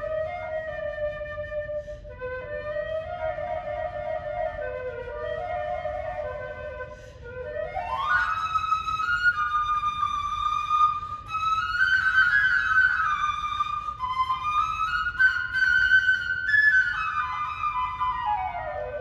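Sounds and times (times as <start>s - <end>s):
slow flute melody: 0.0s - 19.0s.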